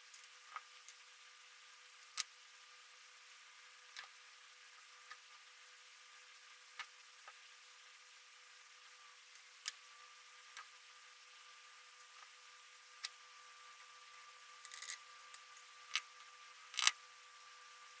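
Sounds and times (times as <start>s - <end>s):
faint steady hum: 0.0s - 18.0s
small metal clicks: 14.6s - 16.1s, 16.7s - 17.0s.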